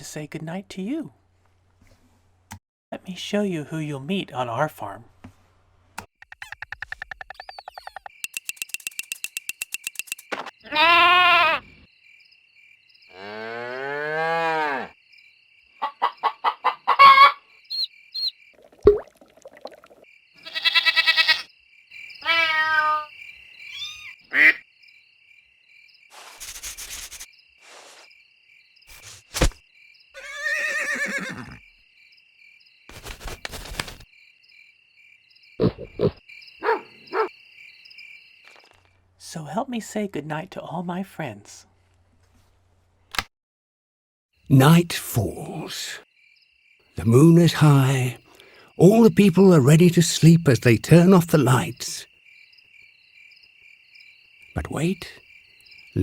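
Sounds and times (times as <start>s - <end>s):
cartoon farm animal calls: 10.6s - 11.8s, 13.1s - 15.0s, 15.8s - 18.3s, 20.4s - 21.5s, 22.2s - 24.6s, 35.6s - 37.3s
livestock mooing: 13.1s - 15.0s.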